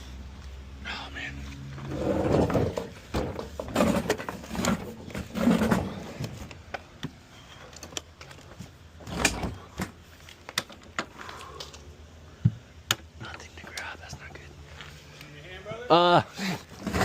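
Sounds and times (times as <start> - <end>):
low grunts: 15.9 - 17.0.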